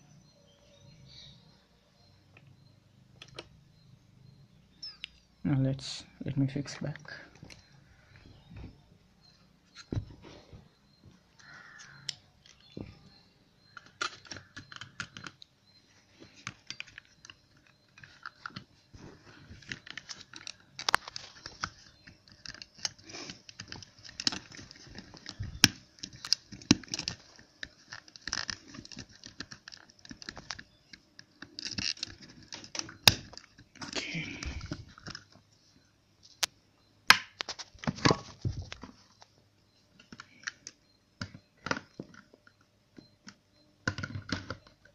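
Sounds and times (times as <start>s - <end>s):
plastic parts clicking and snapping: 3.2s - 3.5s, 13.7s - 15.5s, 16.3s - 18.7s, 19.4s - 35.4s, 40.0s - 44.9s.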